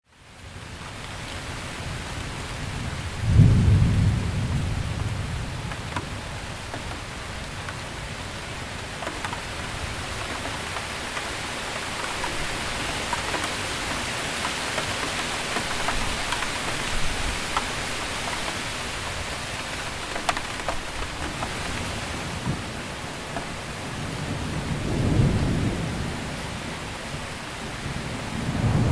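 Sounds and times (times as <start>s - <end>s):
heavy rain falling: 0.1s - 28.9s
thunderclap rumbling: 2.6s - 26.8s, 27.8s - 28.9s.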